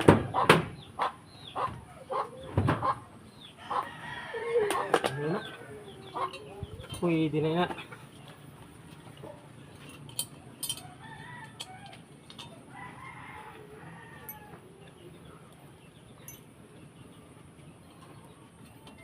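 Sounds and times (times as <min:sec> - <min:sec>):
chickens clucking: 0:00.0 - 0:09.8.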